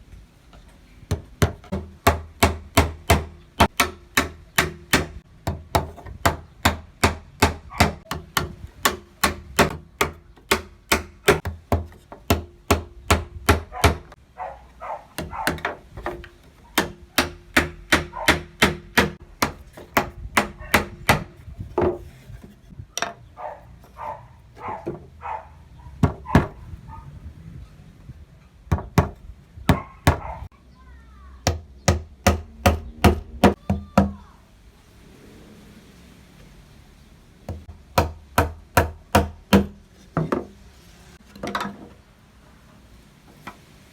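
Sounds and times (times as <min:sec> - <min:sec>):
hammer tapping on wooden slats: 0:01.1 - 0:14.2, 0:15.2 - 0:22.0, 0:37.5 - 0:40.5.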